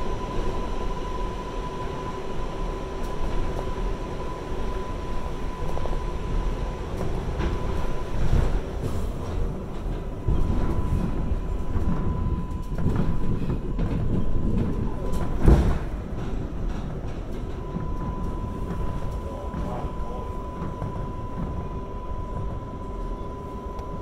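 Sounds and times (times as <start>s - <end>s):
subway train rumble: 0.0s - 24.0s
wheel clatter over rails: 6.9s - 21.6s.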